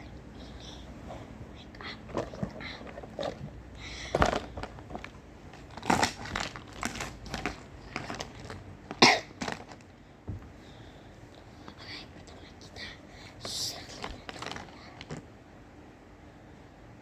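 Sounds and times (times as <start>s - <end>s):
small clicks and crinkles: 1.8s - 9.9s, 13.4s - 15.3s
person coughing: 9.0s - 9.5s.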